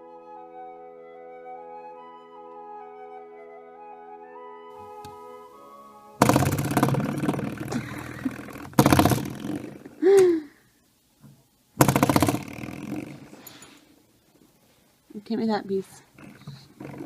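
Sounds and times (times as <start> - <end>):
spring doorstop boing: 6.2 - 9.8, 11.8 - 13.3.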